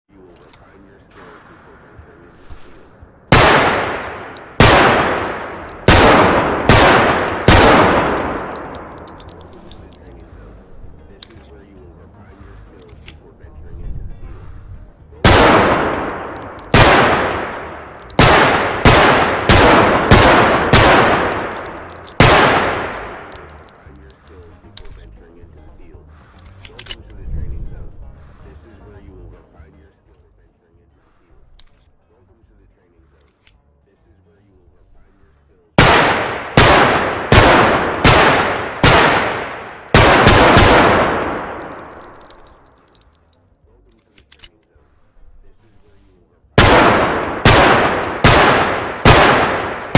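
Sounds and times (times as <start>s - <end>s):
pistol shots with echo: 0.6s - 10.4s, 15.2s - 25.1s, 35.8s - 43.0s, 46.6s - 49.9s.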